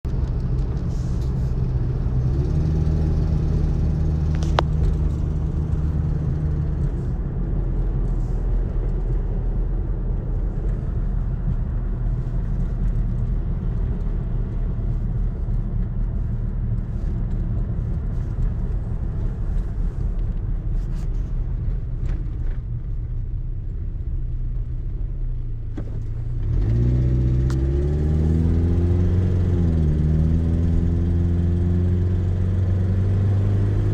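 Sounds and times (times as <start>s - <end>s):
car engine running: 0.0s - 33.9s.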